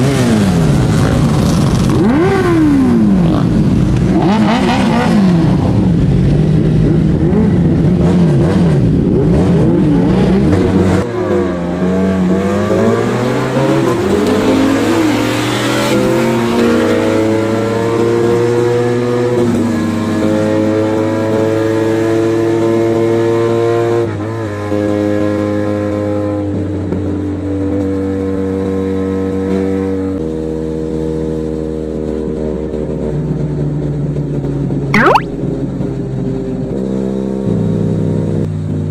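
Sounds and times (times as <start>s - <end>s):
motorcycle engines revving: 0.0s - 21.6s.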